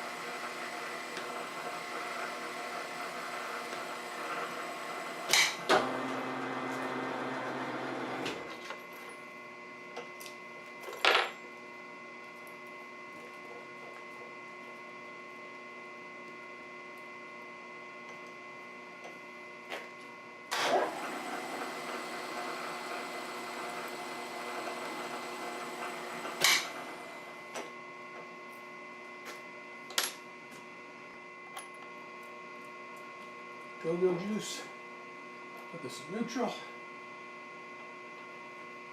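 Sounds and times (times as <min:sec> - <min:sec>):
machine tool motor humming: 0:00.0 - 0:08.6, 0:20.5 - 0:27.5.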